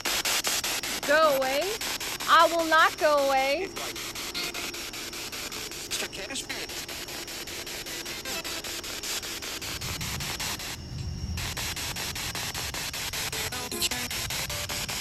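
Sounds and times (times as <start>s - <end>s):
radio static hiss: 0.0s - 15.0s
snatches of broadcast sound: 0.0s - 15.0s.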